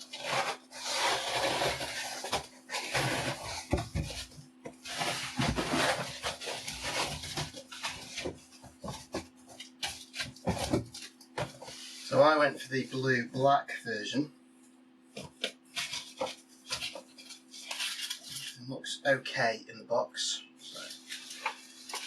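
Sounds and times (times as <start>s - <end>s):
packaging tearing and rustling: 0.0s - 11.7s, 15.3s - 18.6s, 20.7s - 22.0s
cardboard scraping and knocking: 0.0s - 12.1s, 15.2s - 18.4s.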